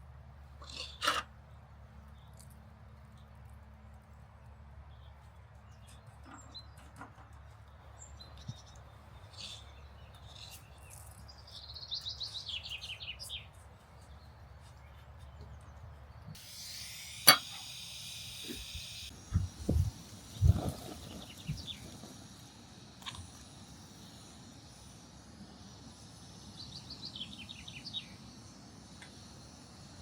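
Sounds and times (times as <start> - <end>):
faint outdoor background: 0.0 - 30.0
songbird calling: 9.3 - 13.5
hissing rustle: 16.4 - 30.0.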